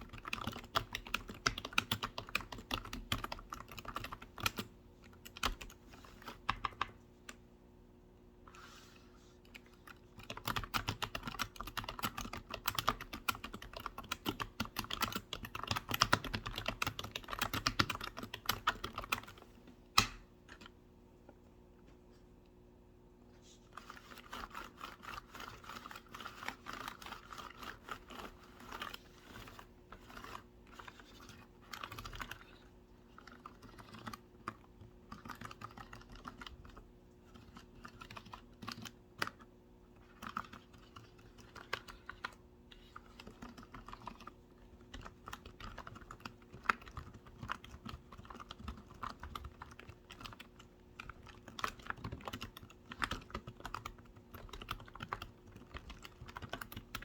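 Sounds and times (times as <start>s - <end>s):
computer keyboard typing: 0.0s - 7.0s, 9.5s - 19.4s, 23.8s - 57.0s.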